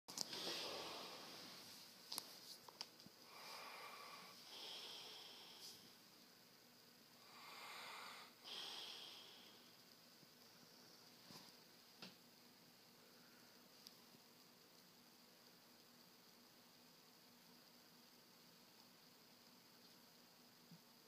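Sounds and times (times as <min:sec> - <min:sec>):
person snoring: 0:00.3 - 0:01.4, 0:03.2 - 0:06.0, 0:07.2 - 0:09.8.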